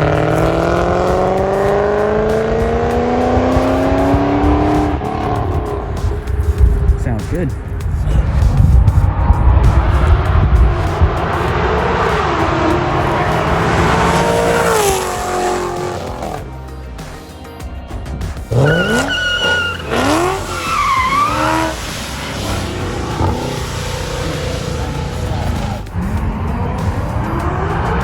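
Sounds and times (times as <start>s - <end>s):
car engine revving: 0.0s - 28.0s
tire squeal: 9.3s - 16.4s, 18.5s - 25.9s.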